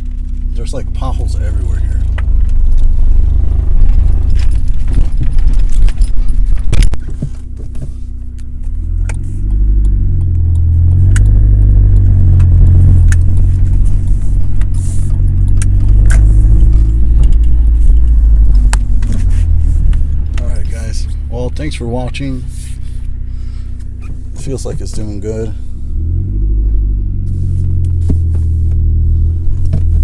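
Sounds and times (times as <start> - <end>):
car engine low rumble: 0.0 - 30.0
car jolting knocks and rattles: 3.4 - 8.1.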